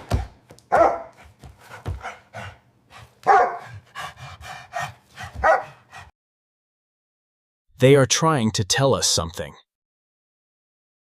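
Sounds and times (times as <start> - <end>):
dog barking: 0.7 - 1.2, 3.2 - 3.8, 5.3 - 5.8.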